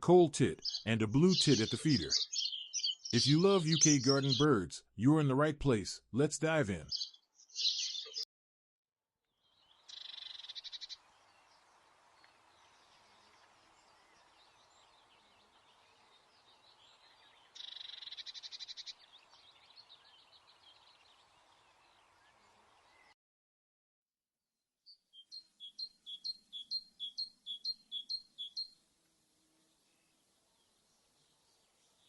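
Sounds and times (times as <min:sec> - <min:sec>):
songbird trilling: 0:00.6 - 0:04.5, 0:06.9 - 0:08.2, 0:09.9 - 0:11.0, 0:17.0 - 0:20.9, 0:25.1 - 0:28.8
faint bird twittering: 0:00.6 - 0:04.6, 0:06.8 - 0:08.2, 0:09.5 - 0:11.6, 0:12.2 - 0:23.1, 0:25.1 - 0:28.8.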